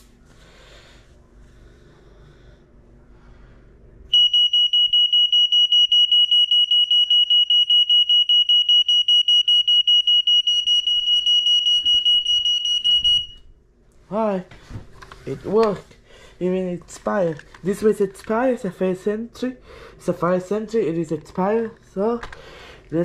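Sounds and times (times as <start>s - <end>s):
smoke alarm pulsing beep: 4.1s - 13.4s.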